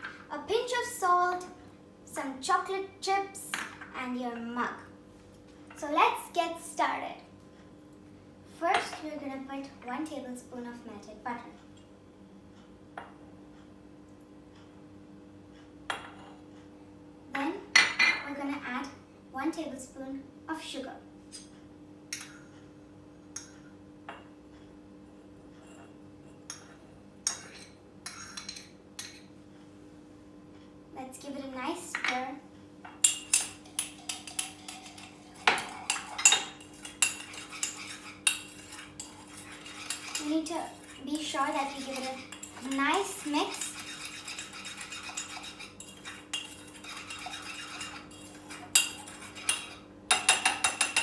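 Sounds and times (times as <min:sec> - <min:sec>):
faint steady hum: 0:00.0 - 0:51.0
metal spoon clinking on mug: 0:33.0 - 0:41.0, 0:41.8 - 0:51.0.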